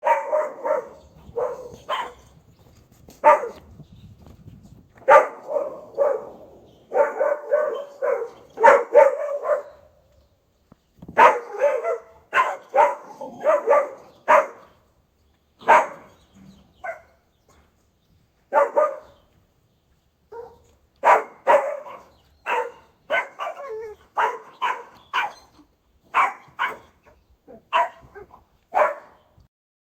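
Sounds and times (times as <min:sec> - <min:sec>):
dog barking aggressively: 0:00.0 - 0:02.3, 0:03.2 - 0:03.6, 0:05.0 - 0:09.8, 0:11.2 - 0:14.7, 0:15.6 - 0:16.2, 0:18.5 - 0:19.2, 0:20.3 - 0:25.4, 0:26.1 - 0:27.1, 0:27.7 - 0:29.2.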